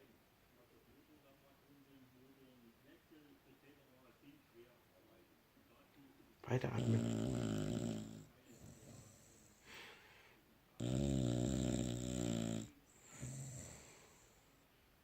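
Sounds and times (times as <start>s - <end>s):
dog snoring: 6.5s - 9.6s, 10.8s - 14.4s
dog breathing faintly: 6.5s - 14.6s.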